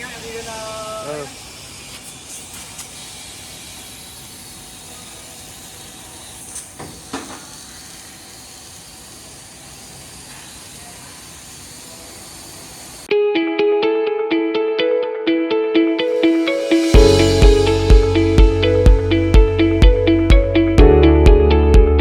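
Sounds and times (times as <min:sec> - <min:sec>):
laser cutter hissing: 0:00.0 - 0:13.1.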